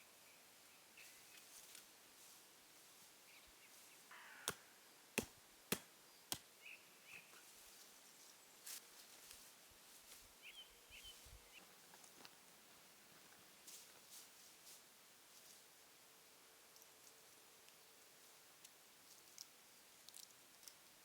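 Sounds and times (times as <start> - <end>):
faint bird chirps: 3.2 - 4.8, 6.0 - 8.7, 10.4 - 11.8.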